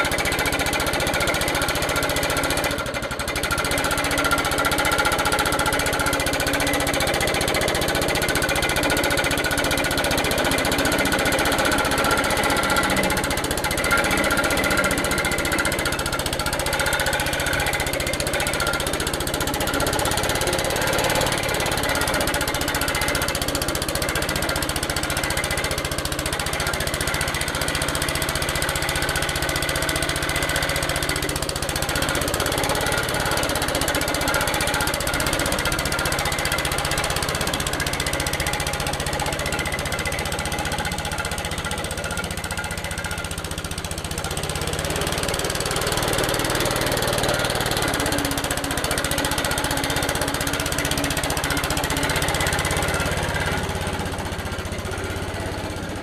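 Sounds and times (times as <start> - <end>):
lawnmower cutting grass: 0.0 - 56.0.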